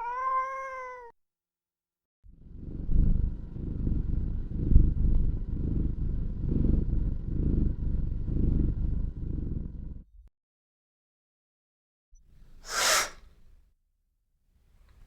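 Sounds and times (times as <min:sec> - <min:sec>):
cat purring: 0:02.3 - 0:10.2.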